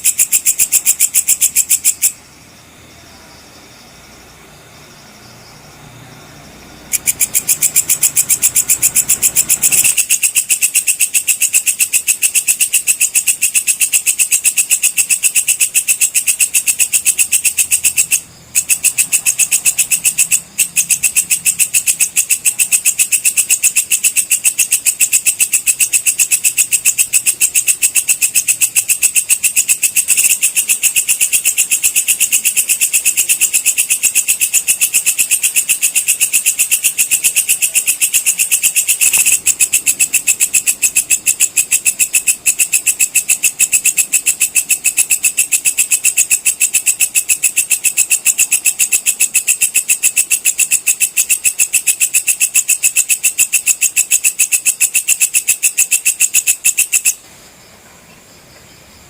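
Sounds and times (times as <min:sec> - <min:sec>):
insect calling with rapid ticks: 0:00.0 - 0:57.7.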